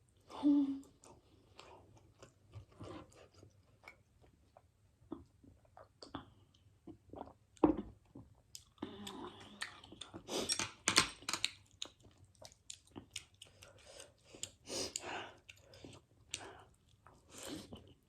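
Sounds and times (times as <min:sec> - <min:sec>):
chewing noodles: 0:11.4 - 0:18.0.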